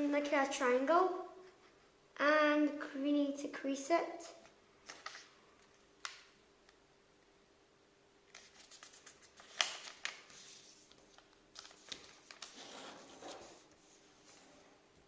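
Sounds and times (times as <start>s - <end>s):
paper rustling and crinkling: 8.3s - 14.6s.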